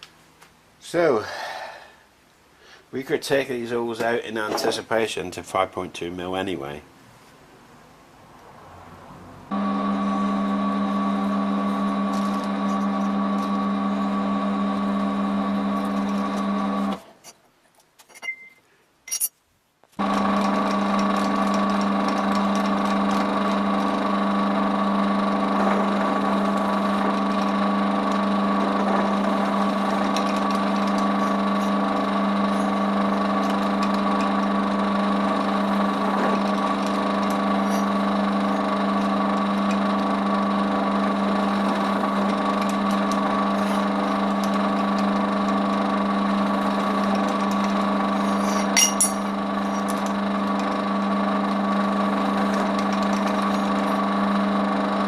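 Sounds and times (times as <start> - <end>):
machine motor humming: 9.5 - 17.0, 20.0 - 55.0.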